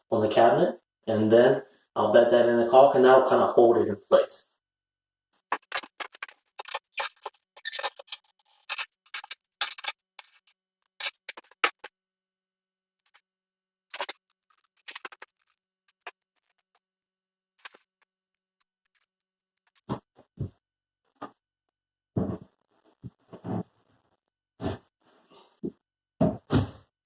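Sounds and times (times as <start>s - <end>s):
plumbing fittings scraping and clicking: 5.5s - 10.4s.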